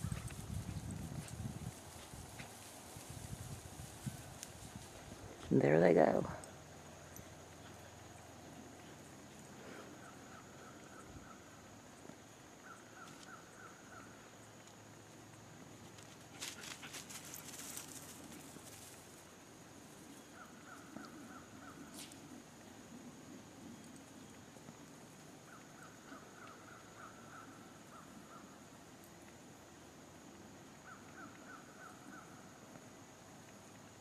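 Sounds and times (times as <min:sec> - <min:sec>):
dogs running through dry grass: 0:00.0 - 0:05.5, 0:15.7 - 0:19.4.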